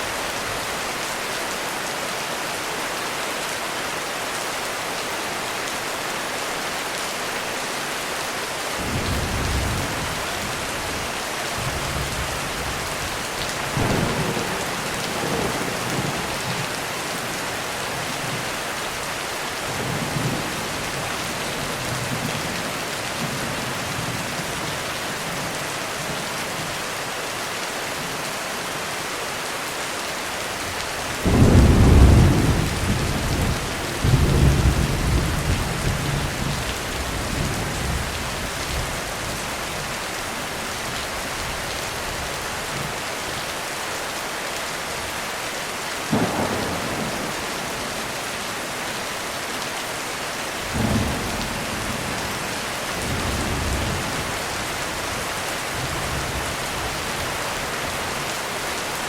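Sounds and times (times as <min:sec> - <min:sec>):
heavy rain falling: 0:00.0 - 0:59.0
thunder rumbling: 0:13.7 - 0:16.7, 0:46.1 - 0:48.6.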